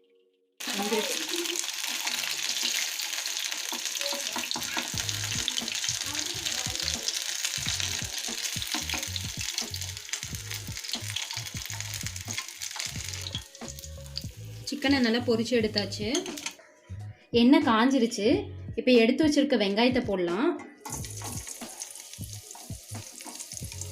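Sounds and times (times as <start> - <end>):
chicken sizzling in hot oil: 0.6 - 16.6, 20.9 - 23.9.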